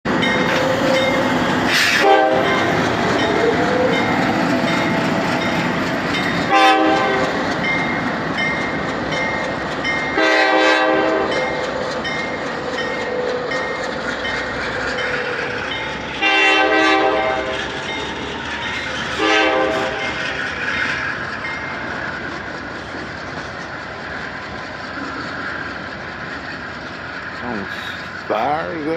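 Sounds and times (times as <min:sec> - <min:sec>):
diesel locomotive engine revving: 0:00.1 - 0:28.9
loud horn blasts: 0:01.7 - 0:02.8, 0:06.5 - 0:07.4, 0:10.2 - 0:11.4, 0:16.2 - 0:17.6, 0:19.2 - 0:20.0.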